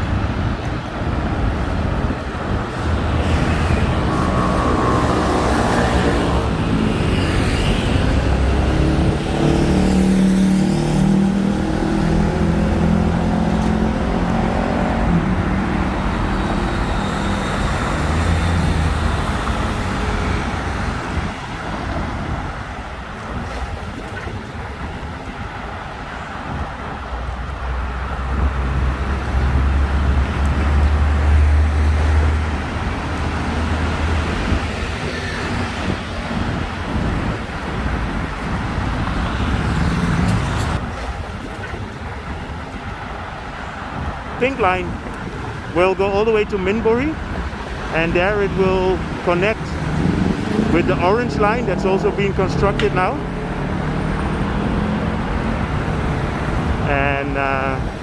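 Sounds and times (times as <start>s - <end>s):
vehicles passing: 0.0s - 58.0s
vehicle engine humming: 1.6s - 22.5s, 27.6s - 58.0s.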